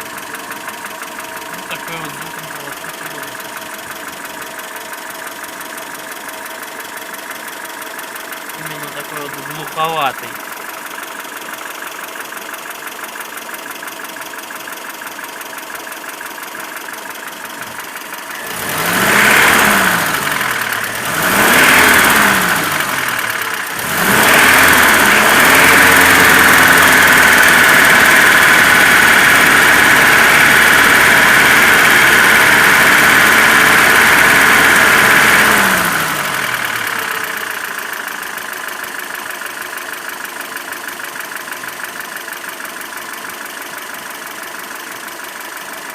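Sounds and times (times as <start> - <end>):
engine revving: 1.4 - 3.6, 8.5 - 10.4, 18.3 - 39.2
petrol engine idling with knock: 10.6 - 18.3.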